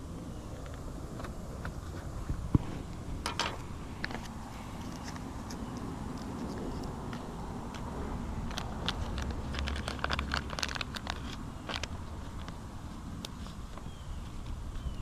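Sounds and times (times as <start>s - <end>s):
low steady rumble: 0.0s - 15.0s
small plastic parts clicking: 3.2s - 12.6s.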